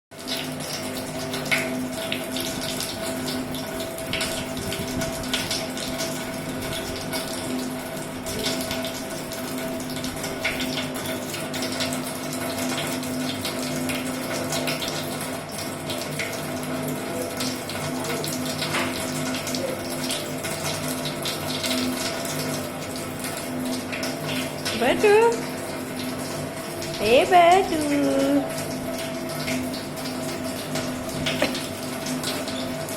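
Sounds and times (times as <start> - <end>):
water running: 0.1 - 32.9
water splashing: 29.6 - 32.8.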